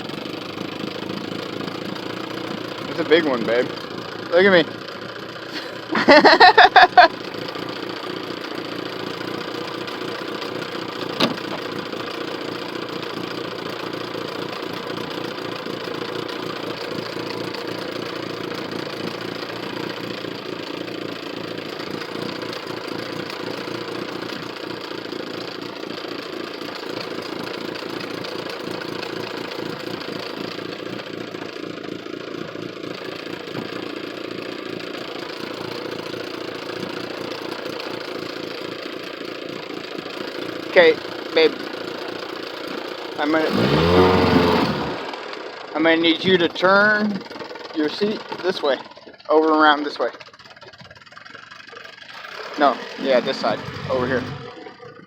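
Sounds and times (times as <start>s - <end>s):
boat motor idling: 0.0s - 55.0s.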